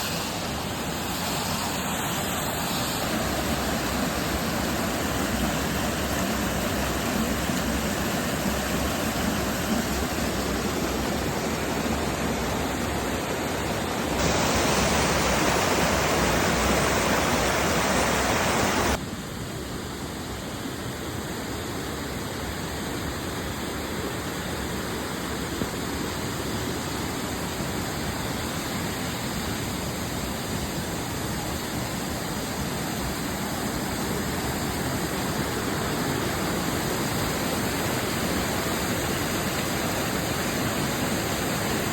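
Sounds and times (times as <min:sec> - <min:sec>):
waterfall roaring: 0:03.1 - 0:19.0.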